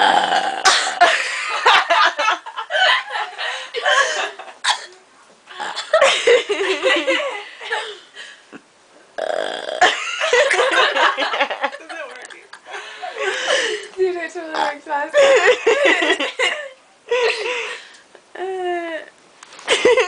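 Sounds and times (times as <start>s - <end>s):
person burping loudly: 0.0s - 1.1s, 5.5s - 6.0s, 9.2s - 10.0s, 14.5s - 14.8s
laughter: 1.0s - 4.6s, 5.9s - 8.0s, 9.9s - 13.6s, 15.2s - 17.6s, 19.7s - 20.0s.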